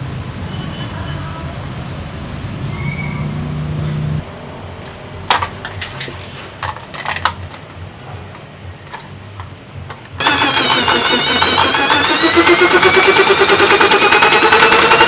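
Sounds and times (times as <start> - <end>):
low hum: 10.2 - 15.0.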